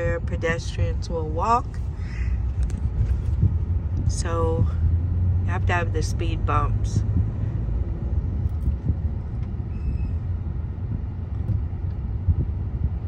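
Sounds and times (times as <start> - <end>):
car engine and tyres rumbling: 0.0 - 13.0.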